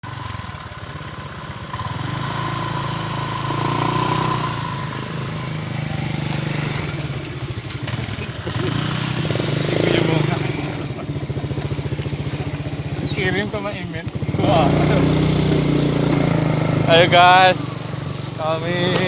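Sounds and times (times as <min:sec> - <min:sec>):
small engine running: 0:00.0 - 0:19.0.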